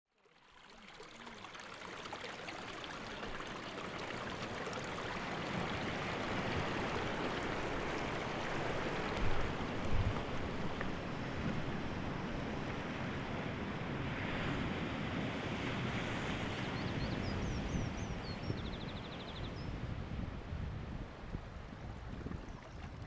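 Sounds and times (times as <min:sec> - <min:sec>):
stream running: 0:00.1 - 0:23.0.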